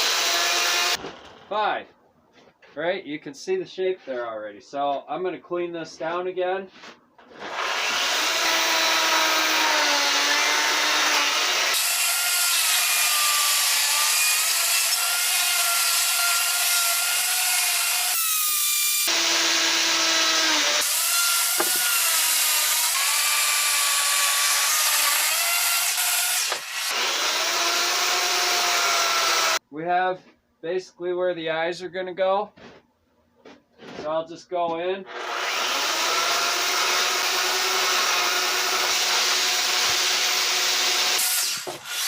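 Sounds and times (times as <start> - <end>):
chainsaw cutting wood: 0.0 - 1.0, 7.3 - 29.6, 35.1 - 42.0.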